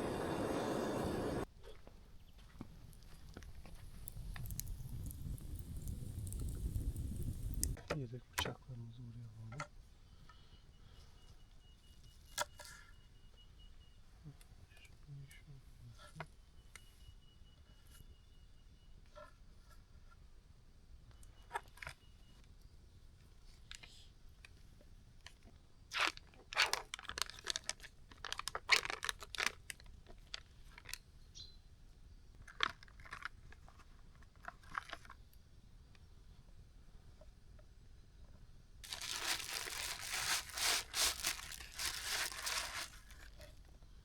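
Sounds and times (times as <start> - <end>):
tearing: 38.8 - 43.3
sharp crunching: 38.8 - 43.4.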